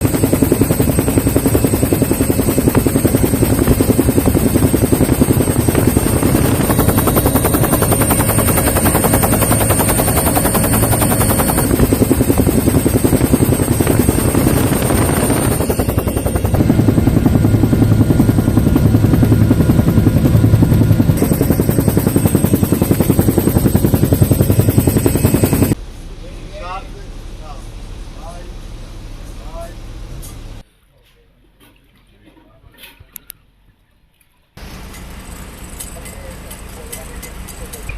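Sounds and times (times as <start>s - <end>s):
helicopter rotor chopping: 0.0s - 25.8s, 34.6s - 37.9s.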